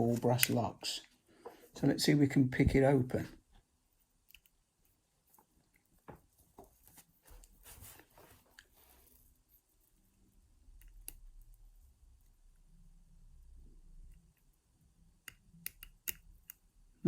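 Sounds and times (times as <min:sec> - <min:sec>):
lock pick clicking and scratching: 0:15.2 - 0:16.7.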